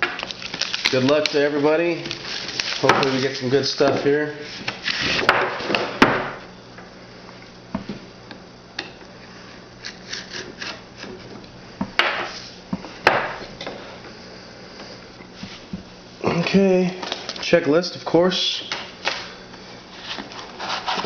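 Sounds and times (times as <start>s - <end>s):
cardboard scraping rustles: 19.9s - 21.0s.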